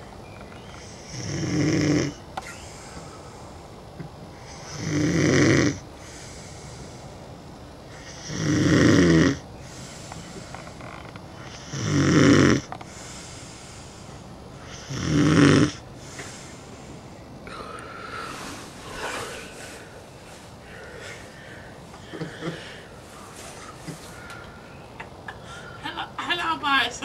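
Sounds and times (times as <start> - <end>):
man snoring: 0.8 - 3.5, 4.4 - 7.1, 7.9 - 16.7.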